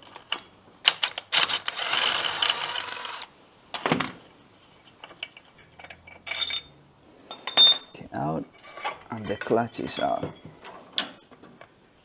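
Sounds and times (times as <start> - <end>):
metal parts clinking: 5.2 - 10.2.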